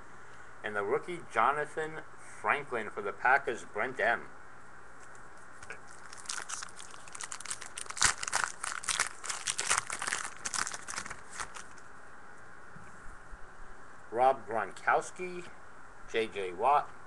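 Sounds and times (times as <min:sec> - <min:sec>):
wrapper being torn and crinkled: 0:05.6 - 0:11.8.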